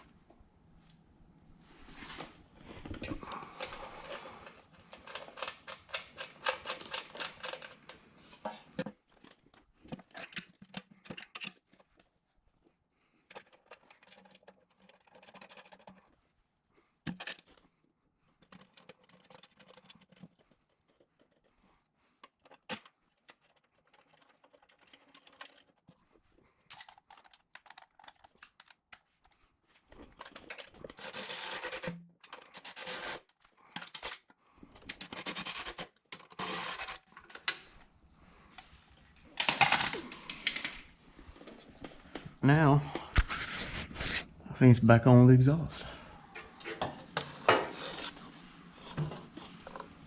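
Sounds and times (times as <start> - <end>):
scraping and rustling: 32.6 - 44.4, 46.2 - 50.0.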